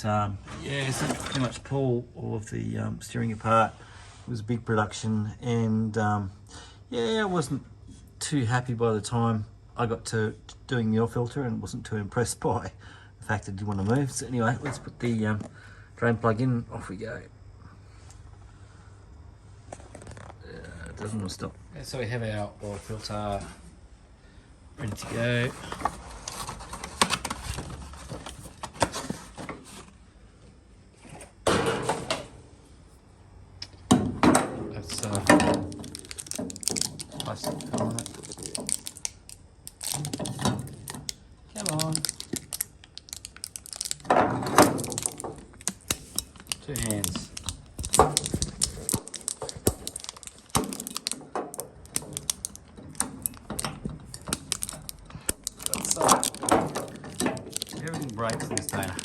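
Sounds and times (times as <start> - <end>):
tools and parts handled: 34.9 - 59.0.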